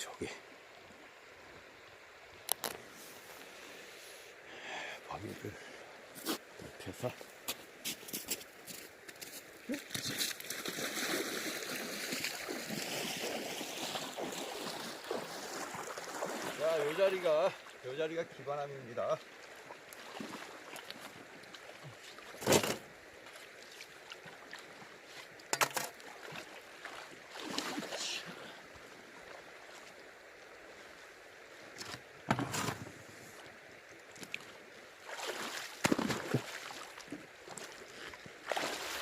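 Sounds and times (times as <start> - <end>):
watery splash: 9.9 - 17.7, 25.6 - 28.3, 35.0 - 37.8, 38.4 - 39.0
sharp knocks in water: 35.8 - 36.6.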